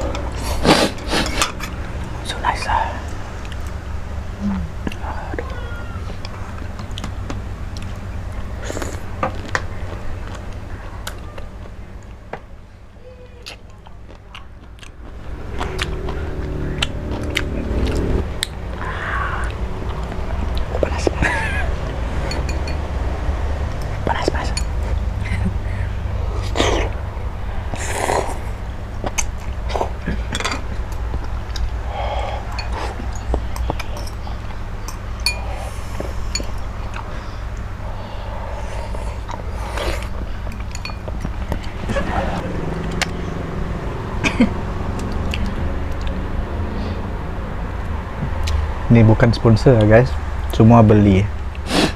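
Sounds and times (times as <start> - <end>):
utensils clinking against dishes: 0.0 - 2.0, 22.2 - 22.9, 30.0 - 30.7, 32.5 - 37.0, 39.8 - 42.2
low background hum: 0.0 - 51.9
chewing and biting: 13.4 - 21.2.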